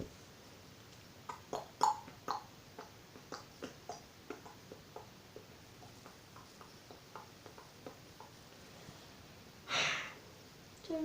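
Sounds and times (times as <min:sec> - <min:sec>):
breathy puff: 0:09.7 - 0:10.2.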